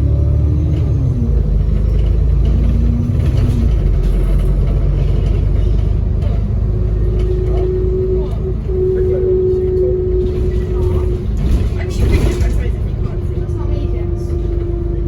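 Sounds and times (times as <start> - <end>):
bus diesel engine rumble: 0.0 - 15.0
whining tones: 6.7 - 12.9.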